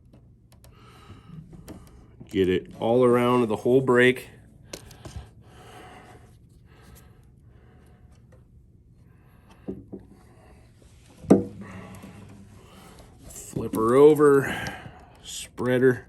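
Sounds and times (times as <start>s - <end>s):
light rubbing and handling: 8.0s - 14.6s
small knocks on wood: 11.2s - 12.2s.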